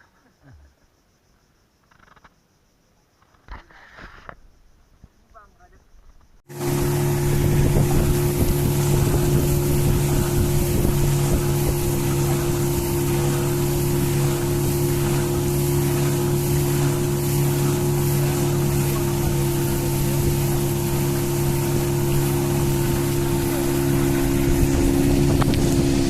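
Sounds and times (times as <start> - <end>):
small boat engine running: 6.5 - 26.0
wind on microphone: 6.5 - 26.0.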